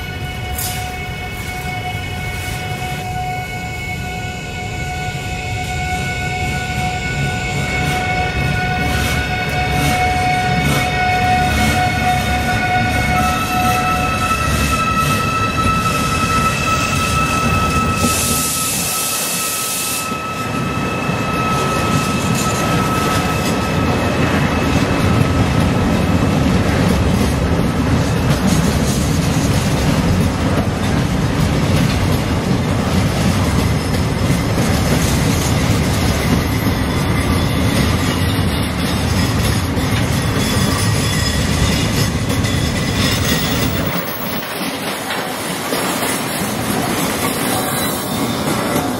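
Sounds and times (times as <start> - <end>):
train wheels rumbling on rails: 0.0 - 48.9
thin squeal: 11.1 - 25.5.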